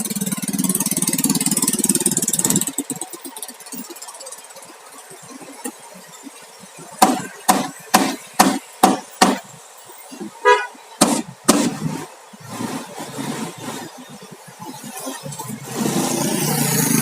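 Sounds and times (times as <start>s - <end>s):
hammer driving nails into wood: 7.0s - 9.4s, 11.0s - 11.8s.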